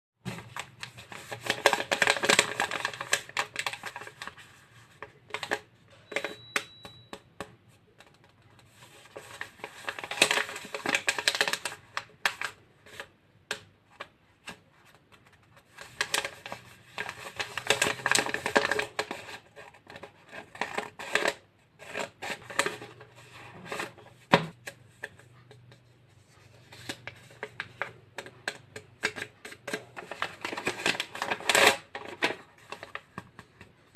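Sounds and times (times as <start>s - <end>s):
paper and plastic wrapping crinkling: 0.4s - 5.6s, 8.6s - 13.0s, 14.8s - 23.9s, 29.0s - 33.9s.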